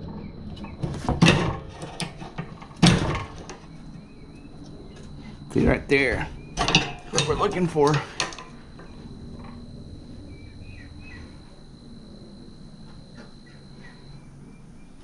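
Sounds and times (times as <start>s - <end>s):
low background hum: 0.0s - 15.0s
thin high whine: 0.0s - 15.0s
faint bird chirps: 10.0s - 11.7s, 13.2s - 15.0s.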